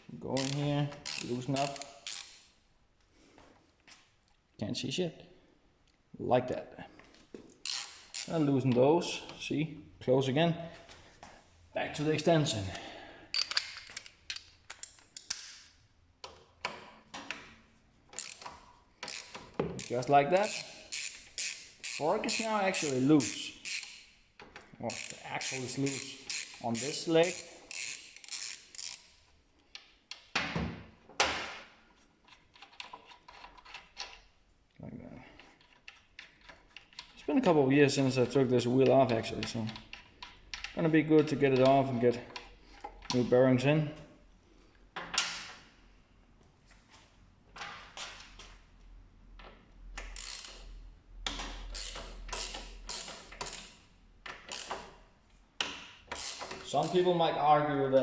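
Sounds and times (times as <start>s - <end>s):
ratchet wrench clicking: 0.4s - 2.5s, 7.6s - 8.3s, 18.2s - 24.1s, 24.9s - 29.2s, 50.0s - 50.8s, 51.6s - 53.8s, 54.4s - 54.8s, 56.1s - 57.0s.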